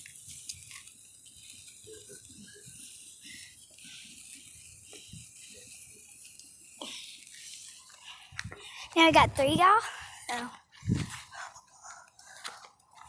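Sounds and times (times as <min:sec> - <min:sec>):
firework crackling fizz: 0:00.0 - 0:13.0
faint voices: 0:01.7 - 0:04.2.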